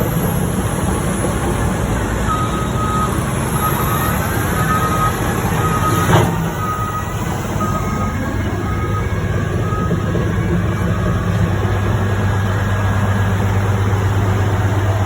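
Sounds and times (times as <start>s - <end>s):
diesel machine rumbling: 0.0s - 15.0s
reversing alarm beeping: 2.3s - 12.6s.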